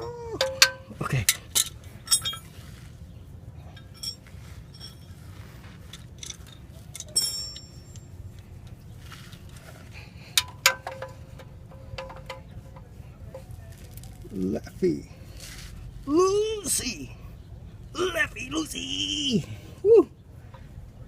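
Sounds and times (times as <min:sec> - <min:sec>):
low steady rumble: 0:00.0 - 0:21.0
metal wrench clinks and taps: 0:00.4 - 0:02.5, 0:03.8 - 0:05.2, 0:05.9 - 0:08.1, 0:10.4 - 0:12.8
sharp metal knocks: 0:00.4 - 0:02.5, 0:10.4 - 0:12.6.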